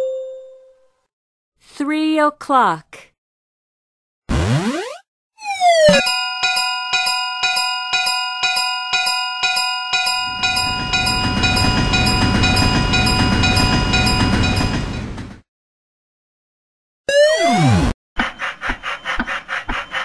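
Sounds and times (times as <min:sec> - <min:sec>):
railroad crossing bell ringing: 0:06.0 - 0:15.2
passing train rumble: 0:10.3 - 0:15.4.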